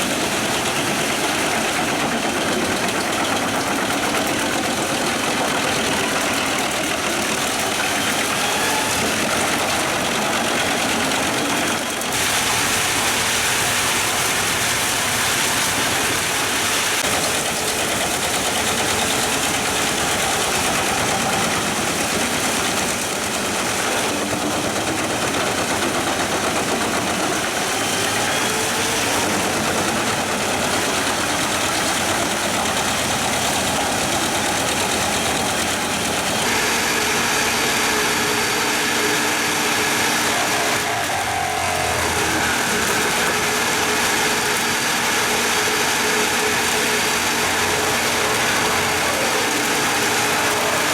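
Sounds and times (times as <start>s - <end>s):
wood chipper running: 0.0s - 50.9s.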